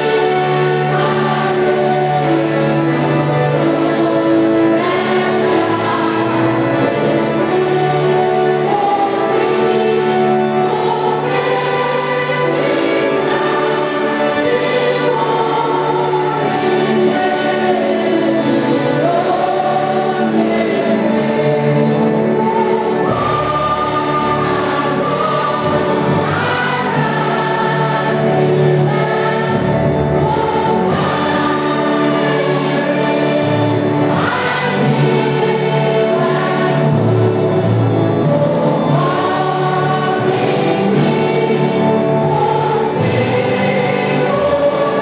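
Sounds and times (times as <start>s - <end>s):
choir singing a hymn: 0.0s - 45.0s.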